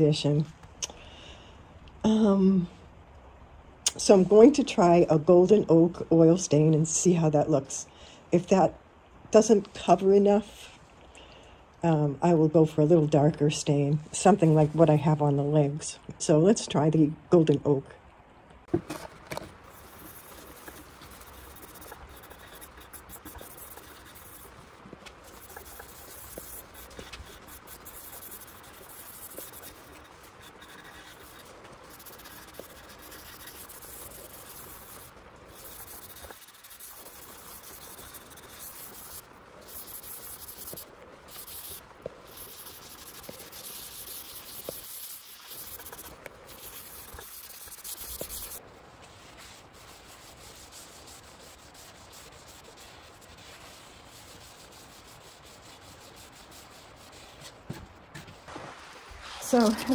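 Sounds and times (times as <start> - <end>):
cloth rubbing on wooden tabletop: 25.2 - 59.9.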